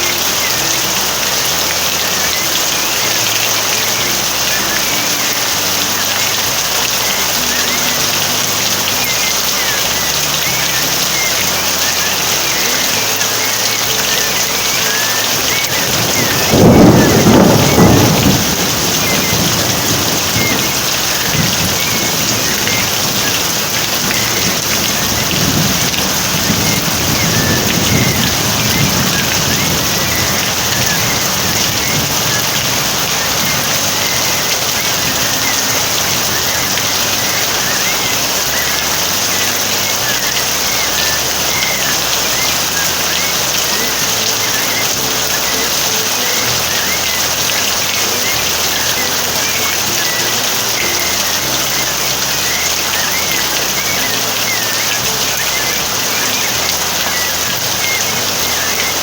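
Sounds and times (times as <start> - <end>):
thunder rumbling: 0.0 - 45.8
steady rain falling: 0.0 - 59.0.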